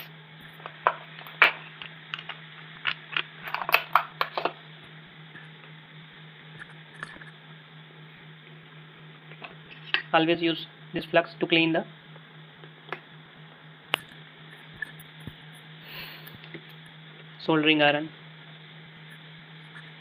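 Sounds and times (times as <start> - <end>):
low electrical hum: 0.0 - 20.0.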